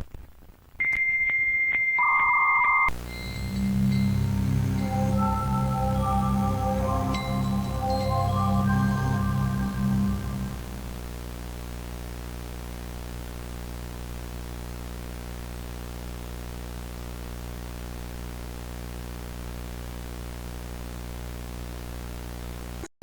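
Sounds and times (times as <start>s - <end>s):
low electrical hum: 2.9s - 15.0s
static hiss: 2.9s - 22.8s.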